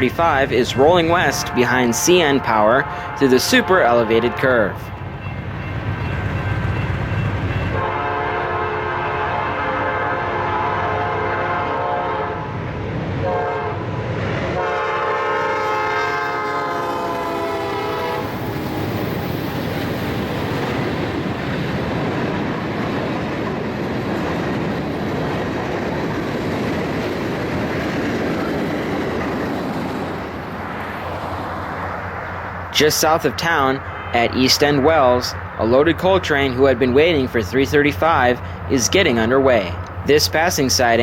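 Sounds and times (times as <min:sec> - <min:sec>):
freight cars rumbling and clattering: 0:00.0 - 0:07.9, 0:18.2 - 0:41.0
train air horn blasts: 0:01.1 - 0:04.8, 0:07.7 - 0:12.5, 0:13.2 - 0:13.8, 0:14.6 - 0:18.4.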